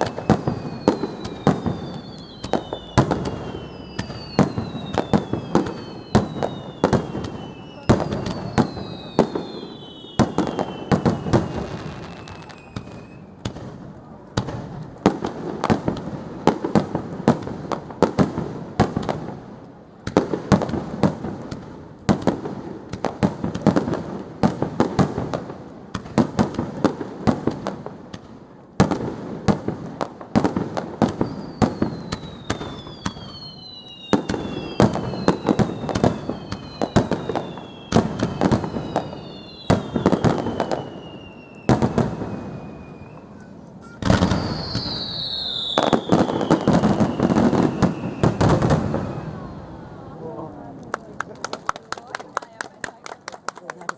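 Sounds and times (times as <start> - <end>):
falling fireworks whistles: 0.0 - 13.8, 28.8 - 50.2
loud fireworks bangs: 0.0 - 50.1
fireworks crackling and popping: 0.0 - 53.9.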